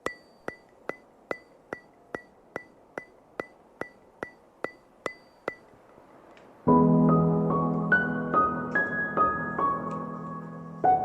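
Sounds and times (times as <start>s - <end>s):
sharp ringing ticks: 0.0s - 6.1s.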